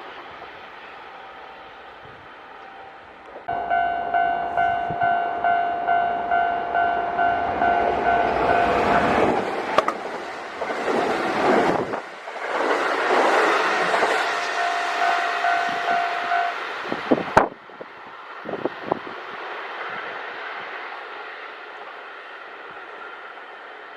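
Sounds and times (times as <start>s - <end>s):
train wheels rushing on rails: 0.0s - 23.9s
level-crossing alarm bell ringing: 3.5s - 9.3s, 14.0s - 16.6s.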